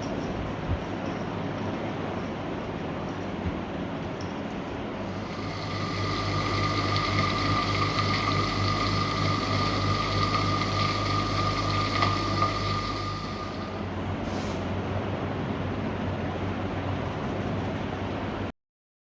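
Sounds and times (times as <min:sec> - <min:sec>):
machine humming and whining: 0:04.9 - 0:14.2.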